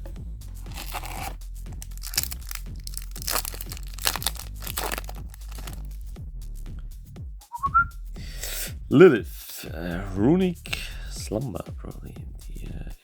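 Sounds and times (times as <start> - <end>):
quiet background music: 0.0 - 13.0
foil wrapper tearing and crinkling: 0.6 - 6.1.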